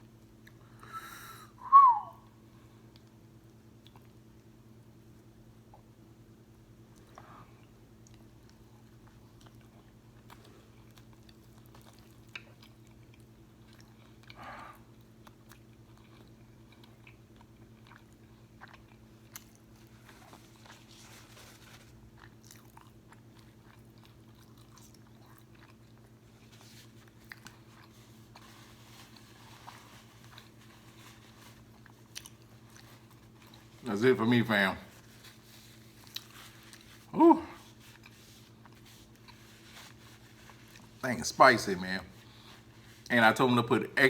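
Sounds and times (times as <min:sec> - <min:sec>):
faint steady hum: 0:00.0 - 0:44.0
person chewing crunchy food: 0:07.0 - 0:33.8, 0:34.9 - 0:41.0.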